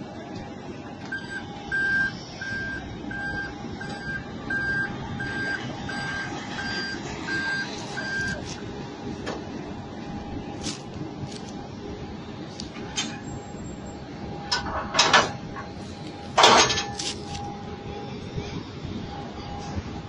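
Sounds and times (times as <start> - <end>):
continuous low rumble: 0.0 - 20.0
reversing alarm beeping: 1.0 - 8.4, 12.8 - 20.0.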